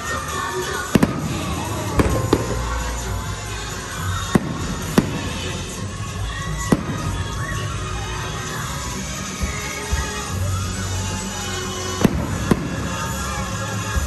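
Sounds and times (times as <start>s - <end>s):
loud show music: 0.0s - 14.0s
fireworks bangs: 0.7s - 10.4s, 11.9s - 14.0s.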